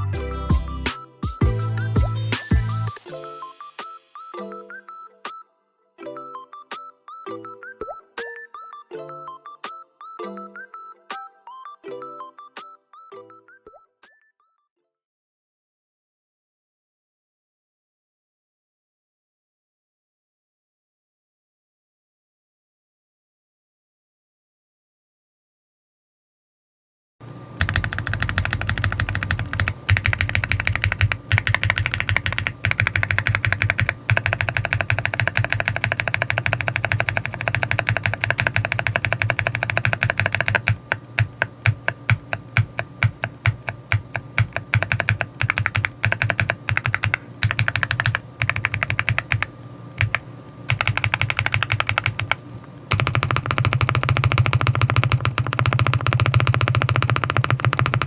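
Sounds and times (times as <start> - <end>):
typing on mechanical keyboard: 27.6 - 58.0.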